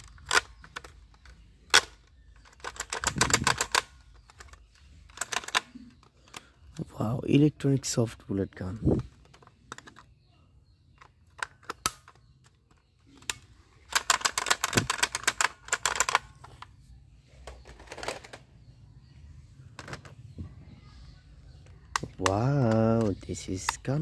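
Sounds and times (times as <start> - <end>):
plastic toy gun clicking: 0.0 - 6.5, 11.3 - 16.6, 21.9 - 23.9.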